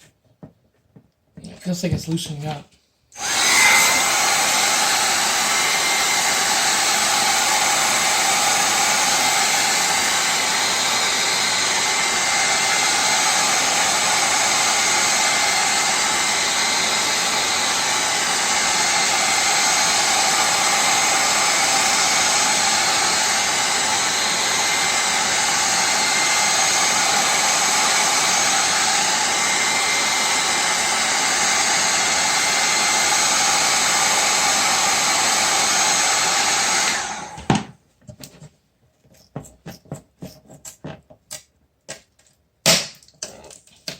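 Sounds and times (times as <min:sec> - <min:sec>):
heat gun blowing with whine: 0:03.2 - 0:37.6.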